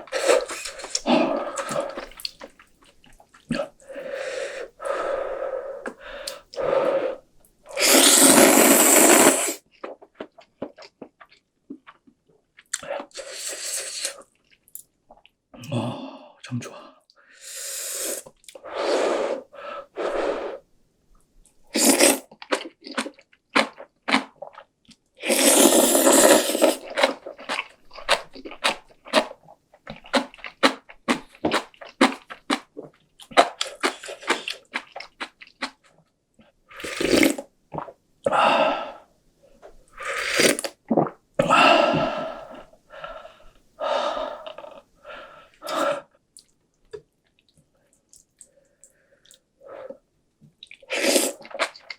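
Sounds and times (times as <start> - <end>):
noodles slurped: 0.0 - 2.7, 7.7 - 12.0, 21.7 - 35.8, 36.7 - 38.0, 39.9 - 42.7, 50.6 - 51.9
crunchy chewing: 21.9 - 36.0.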